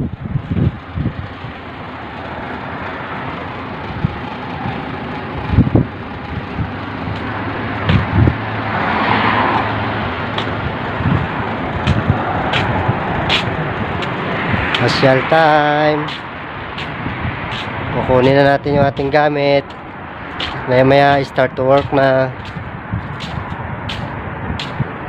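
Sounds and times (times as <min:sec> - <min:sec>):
road traffic: 0:00.0 - 0:25.0
vehicle passing: 0:00.0 - 0:25.0
low thumps: 0:05.4 - 0:08.7, 0:09.5 - 0:15.3.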